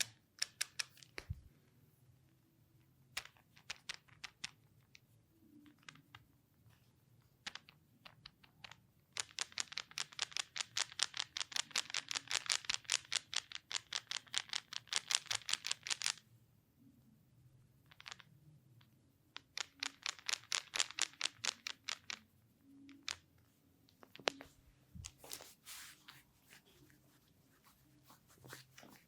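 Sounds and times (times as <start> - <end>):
hands clicking during massage: 0.0 - 1.3, 7.4 - 16.2, 19.4 - 22.2.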